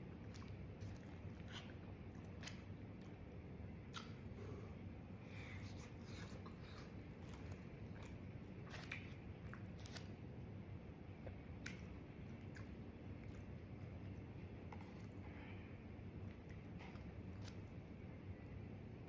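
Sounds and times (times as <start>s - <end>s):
chewing food: 0.0s - 4.4s, 5.6s - 10.2s, 11.2s - 15.4s
low background noise: 0.0s - 19.0s
wet mouth clicks and smacks: 3.9s - 4.2s, 11.6s - 12.7s.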